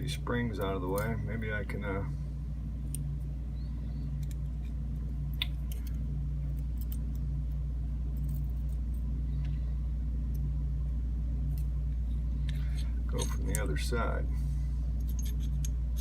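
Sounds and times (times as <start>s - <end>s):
steady low hum: 0.0s - 16.0s
small metallic lock parts clicking: 5.5s - 6.0s, 6.6s - 7.2s, 12.7s - 13.8s, 15.0s - 16.0s.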